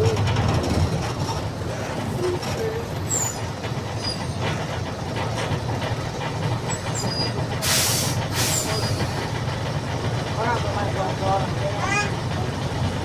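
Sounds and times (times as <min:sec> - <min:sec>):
bus engine running: 0:00.0 - 0:13.0
compressed air hiss: 0:07.6 - 0:09.2.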